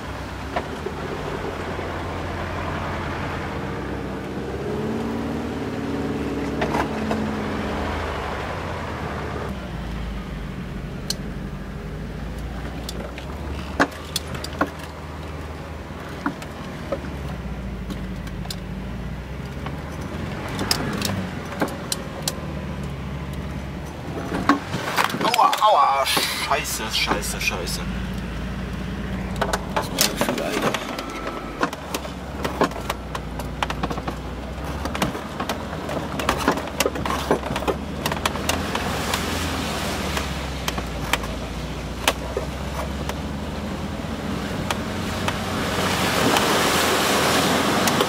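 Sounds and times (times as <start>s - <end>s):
van engine running: 0.0s - 48.0s
sharp clicks and knocks: 19.4s - 26.3s, 29.3s - 39.2s.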